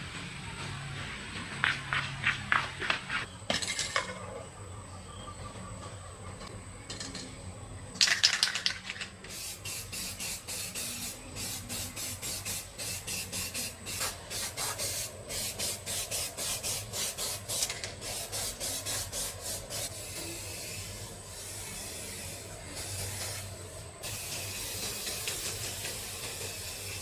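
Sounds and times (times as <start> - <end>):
rhythmic hand rubbing strokes: 9.3 - 27.0.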